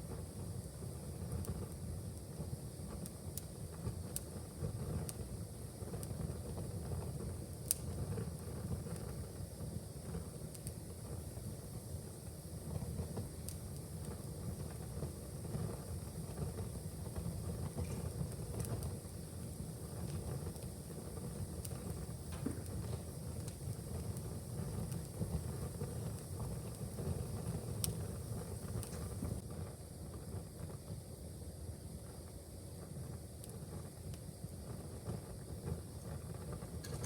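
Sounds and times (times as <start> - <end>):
fire crackling and popping: 0.0 - 37.0
fire rumbling: 0.0 - 37.0.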